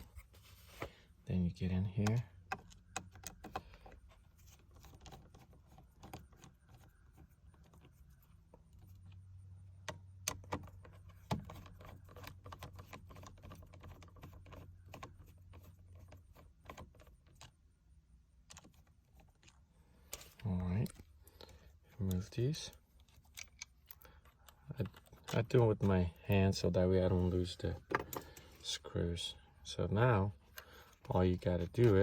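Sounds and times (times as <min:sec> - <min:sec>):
screwdriver and plastic parts clicking: 0:01.9 - 0:09.2, 0:09.8 - 0:17.7, 0:18.4 - 0:26.7, 0:30.4 - 0:32.0.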